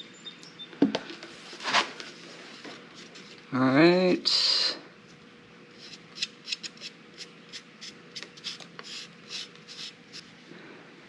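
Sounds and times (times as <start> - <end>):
hands rustling and scraping filters: 1.0 - 3.5.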